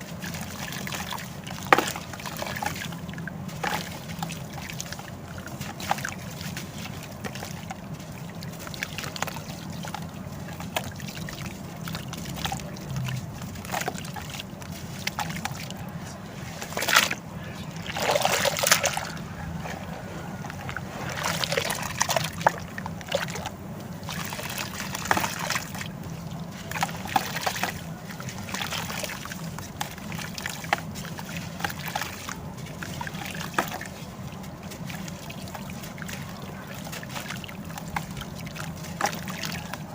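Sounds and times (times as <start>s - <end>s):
splashing rush: 0.0s - 29.4s
water sloshing and trickling: 0.0s - 39.9s.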